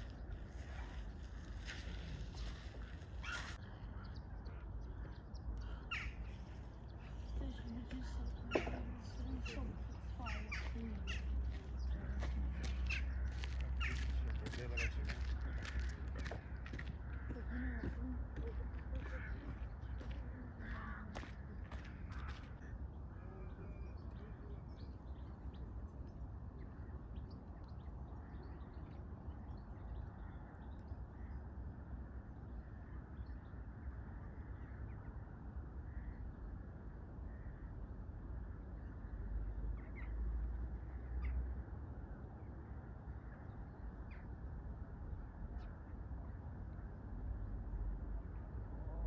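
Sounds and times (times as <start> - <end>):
faint bird calls: 0.0 - 25.6
low outdoor rumble: 0.0 - 49.0.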